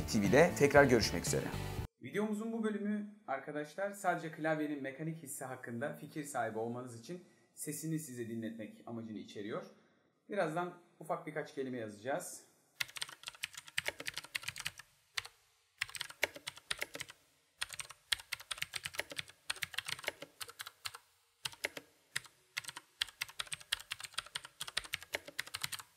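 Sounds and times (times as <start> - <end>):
mechanical keyboard key clicks: 15.8 - 25.9.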